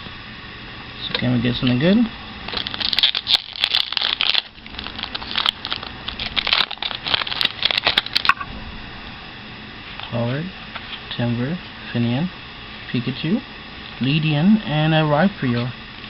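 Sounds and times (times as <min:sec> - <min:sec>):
foil wrapper crinkling: 0:02.5 - 0:08.4.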